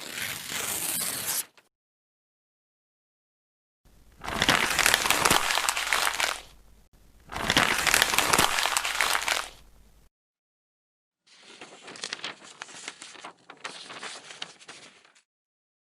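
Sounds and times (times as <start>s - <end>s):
paper crumpling: 4.2s - 6.6s, 7.3s - 9.7s, 11.3s - 15.2s.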